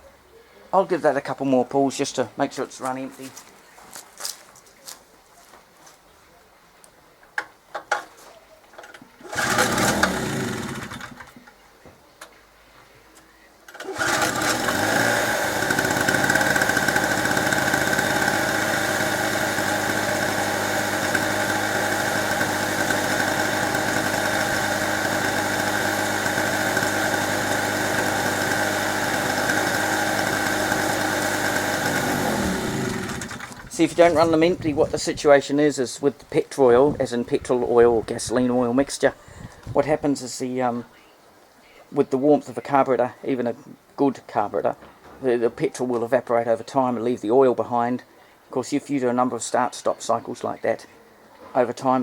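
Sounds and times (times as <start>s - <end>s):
pull cord starting: 8.8s - 11.4s, 13.7s - 34.2s
small two-stroke engine running: 9.2s - 11.3s, 13.7s - 34.4s.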